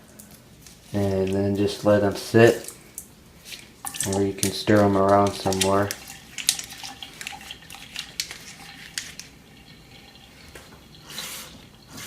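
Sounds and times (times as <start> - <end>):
small wet splashes and clicks: 2.6 - 10.9.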